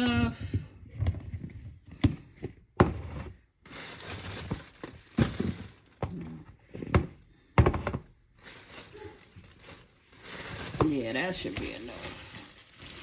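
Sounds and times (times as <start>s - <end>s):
knocks and thuds on counter: 6.8s - 8.1s.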